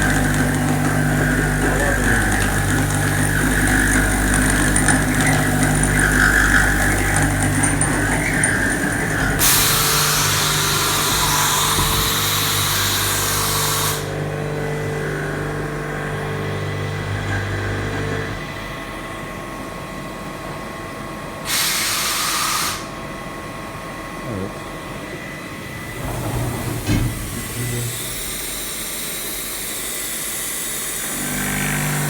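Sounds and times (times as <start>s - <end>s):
milling machine hum: 0.0s - 32.0s
loud spray-like hiss: 9.4s - 14.1s, 21.5s - 23.0s.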